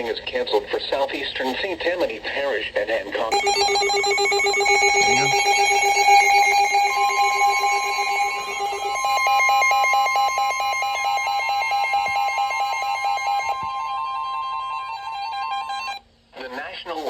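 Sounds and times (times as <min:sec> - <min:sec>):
high-pitched electronic alarm tones: 0:03.3 - 0:16.0
warbling alarm tone: 0:03.3 - 0:16.0.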